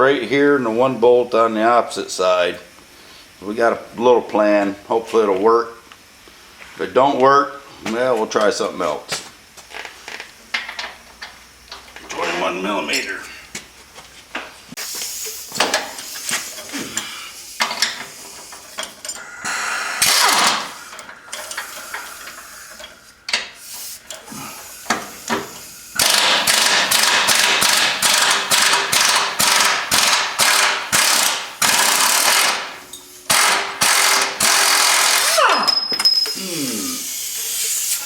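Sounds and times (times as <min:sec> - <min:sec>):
impact wrench hammering: 0:15.5 - 0:16.4, 0:20.0 - 0:24.2, 0:24.8 - 0:35.9.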